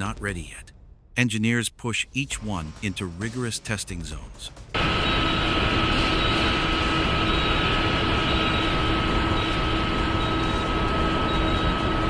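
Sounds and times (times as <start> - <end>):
industrial machinery drone: 4.3 - 12.0
high steady whine: 4.7 - 12.0.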